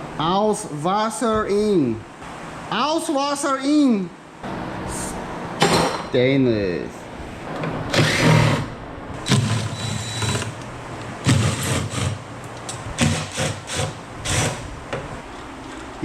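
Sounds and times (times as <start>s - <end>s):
handheld power tool bursts: 7.9s - 10.6s, 13.0s - 14.6s.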